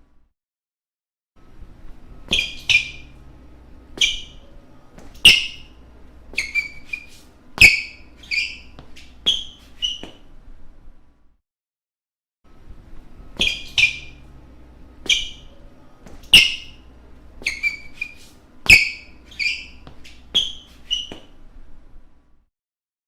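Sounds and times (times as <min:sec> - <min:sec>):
shoes squeaking on hardwood floor: 0:02.3 - 0:03.3, 0:03.9 - 0:10.3, 0:13.4 - 0:14.3, 0:15.0 - 0:21.4
faint shuffling: 0:03.1 - 0:10.3.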